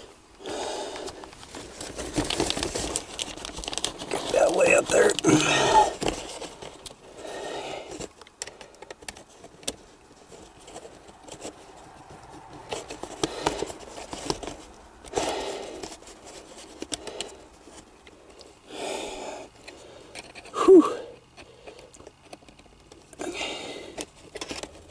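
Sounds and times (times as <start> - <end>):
rustling: 0.0 - 18.7.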